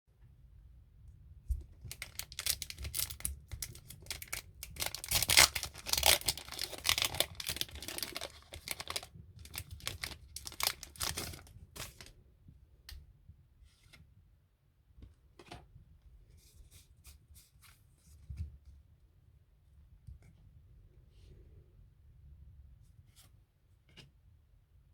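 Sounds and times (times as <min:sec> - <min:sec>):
foil wrapper tearing and crinkling: 0:01.9 - 0:12.1.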